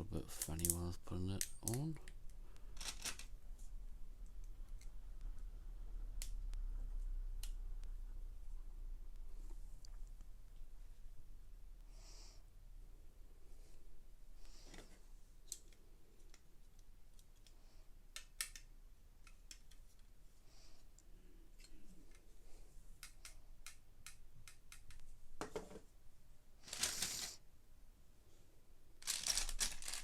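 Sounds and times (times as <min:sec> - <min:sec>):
plastic pieces clicking together: 0:00.3 - 0:03.3, 0:15.4 - 0:20.1, 0:29.0 - 0:30.0
rustling: 0:26.6 - 0:27.4, 0:29.0 - 0:30.0.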